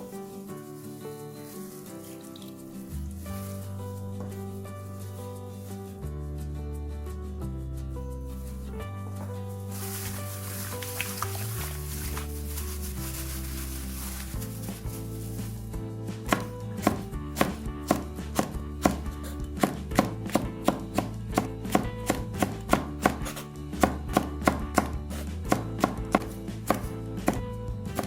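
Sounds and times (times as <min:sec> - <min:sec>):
knife chopping on cutting board: 0:16.2 - 0:27.4.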